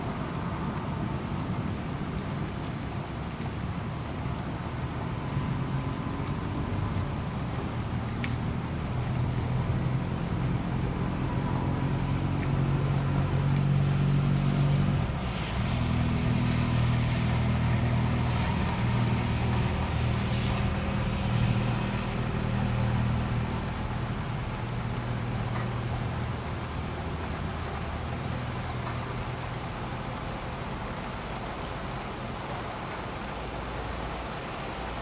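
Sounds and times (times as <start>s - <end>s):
faint rain hiss: 0.0s - 35.0s.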